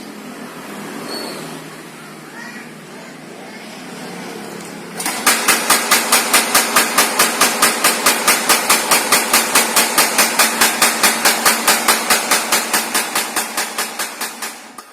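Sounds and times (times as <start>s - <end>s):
power hammer striking: 5.0s - 14.9s.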